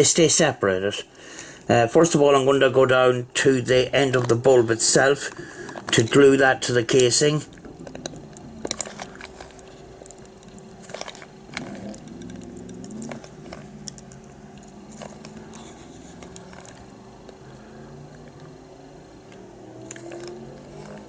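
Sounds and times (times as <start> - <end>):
faint steady hum: 0.0 - 21.0
small plastic parts clicking: 6.9 - 18.6, 19.2 - 21.0.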